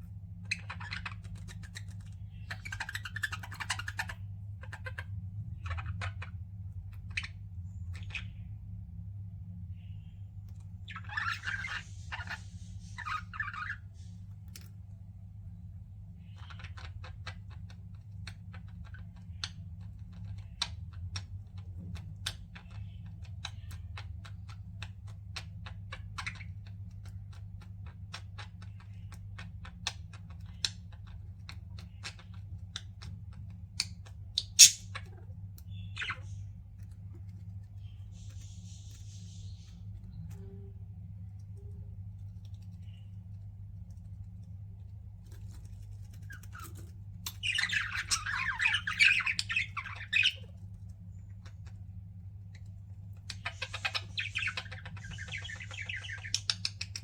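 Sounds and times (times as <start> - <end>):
steady low hum: 0.0 - 57.0
budgerigars chattering: 0.5 - 6.4, 16.2 - 21.6, 33.8 - 36.5, 46.2 - 50.6, 53.2 - 57.0.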